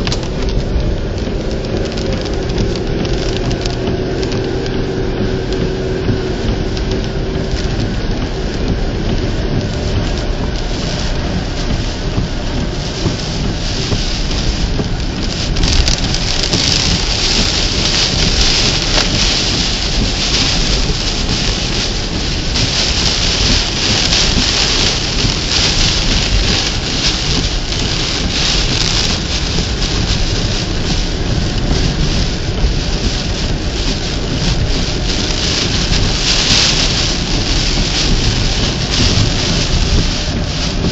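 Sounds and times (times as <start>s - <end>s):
heavy rain pouring: 0.0s - 40.9s.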